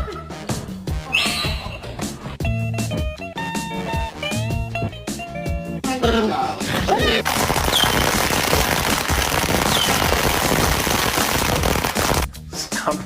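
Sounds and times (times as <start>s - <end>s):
guitar music: 2.4s - 5.8s
rapid crackling pops: 7.2s - 12.3s.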